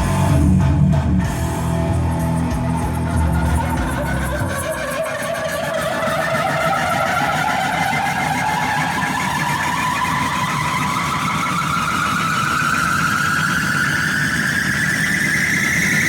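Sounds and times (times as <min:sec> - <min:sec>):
low rumble: 0:00.0 - 0:05.0.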